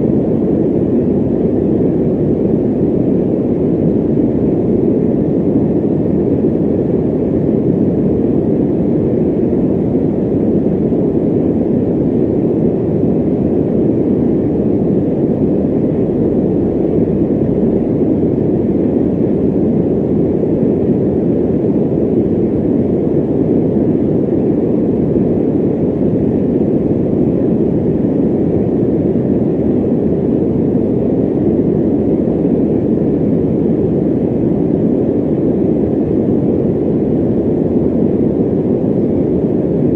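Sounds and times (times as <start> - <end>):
electric fan running: 0.0 - 39.9.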